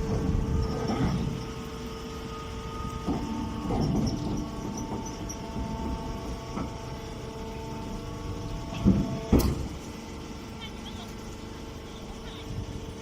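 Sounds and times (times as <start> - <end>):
baler machine humming: 0.0 - 13.0
machine knocks: 8.7 - 9.8.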